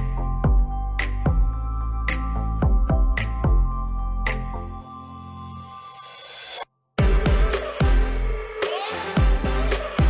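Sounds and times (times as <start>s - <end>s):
electronic music: 0.0s - 10.0s.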